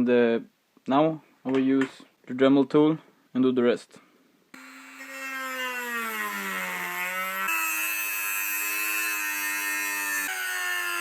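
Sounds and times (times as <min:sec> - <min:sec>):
rotary tool grinding whine: 0:04.6 - 0:11.0.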